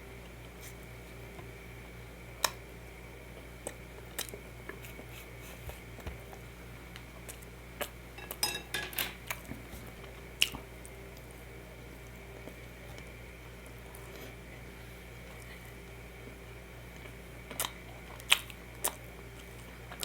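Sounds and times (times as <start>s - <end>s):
wet squishing of food: 16.9s - 20.0s.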